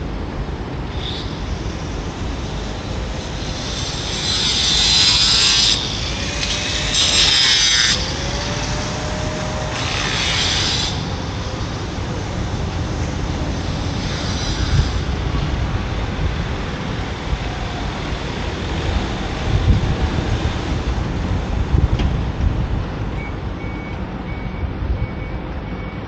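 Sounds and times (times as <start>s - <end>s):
wind rumble on microphone: 0.0s - 26.0s
power tool cutting: 1.2s - 20.9s.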